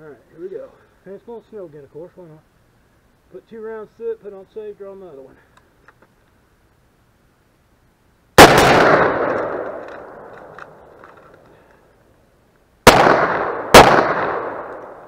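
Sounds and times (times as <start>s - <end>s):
pistol shots: 8.4s - 10.8s, 12.8s - 15.0s.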